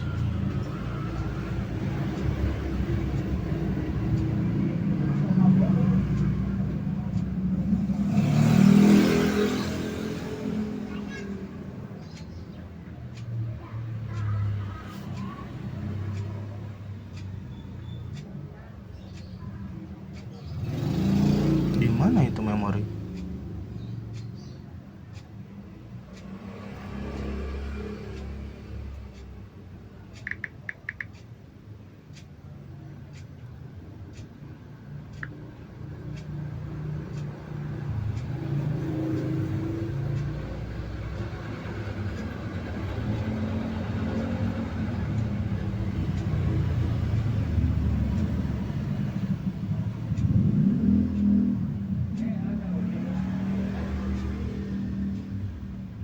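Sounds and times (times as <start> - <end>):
vehicle passing rumble: 20.5 - 23.8, 35.7 - 56.0
short clicks: 30.1 - 31.3.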